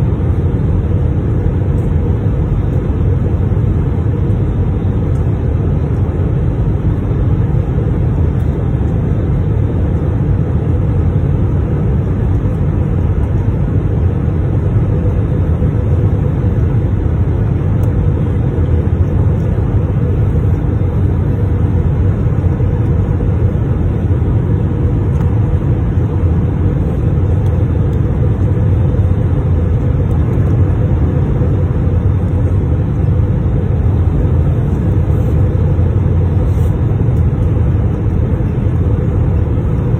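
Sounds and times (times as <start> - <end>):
aircraft cabin rumble: 0.0 - 39.9.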